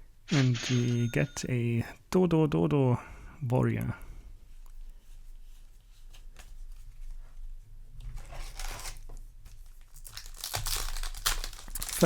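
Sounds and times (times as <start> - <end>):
cards and foil packs rustling: 8.1 - 12.0.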